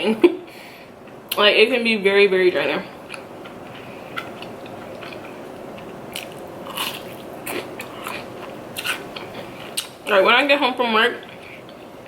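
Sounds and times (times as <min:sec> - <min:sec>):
person chewing crunchy food: 0:03.1 - 0:10.0.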